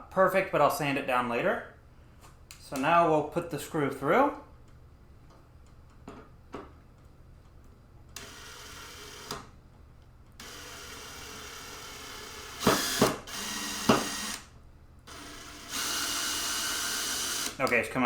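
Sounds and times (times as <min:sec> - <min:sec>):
power drill driving a screw: 0:08.2 - 0:09.4, 0:10.4 - 0:14.5, 0:15.1 - 0:17.6.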